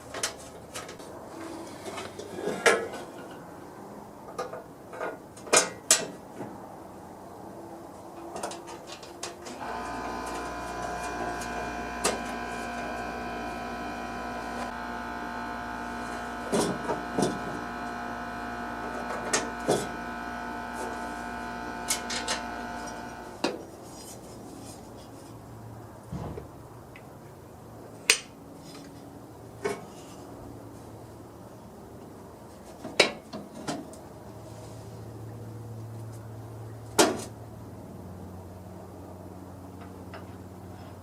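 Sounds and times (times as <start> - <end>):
small motor humming: 9.6 - 23.4.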